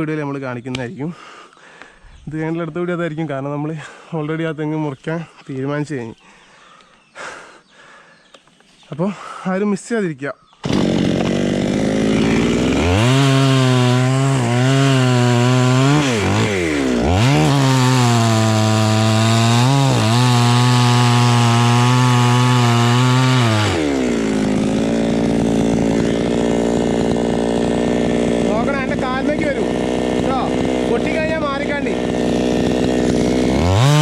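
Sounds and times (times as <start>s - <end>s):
chainsaw cutting wood: 10.6s - 34.0s.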